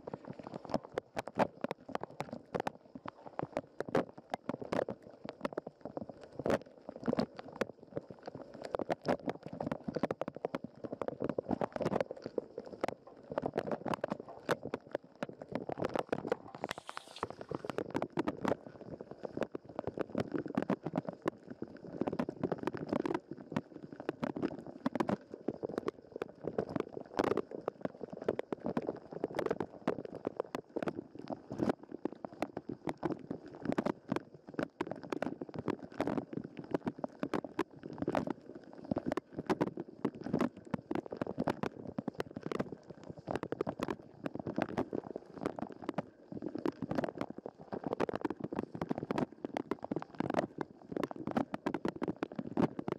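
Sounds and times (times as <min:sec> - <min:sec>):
water spraying on camera housing: 0:16.4 - 0:17.7.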